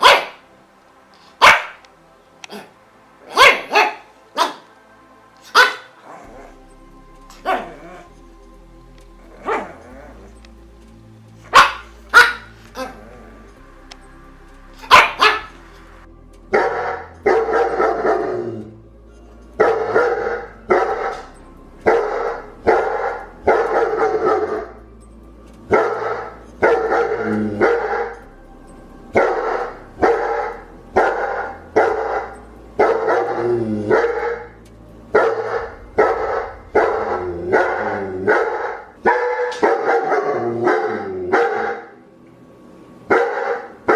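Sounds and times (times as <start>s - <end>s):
dog barking: 0.0s - 0.4s, 1.4s - 1.8s, 3.3s - 4.6s, 5.5s - 6.2s, 11.5s - 13.0s, 14.8s - 15.5s, 35.2s - 41.9s, 43.1s - 43.7s.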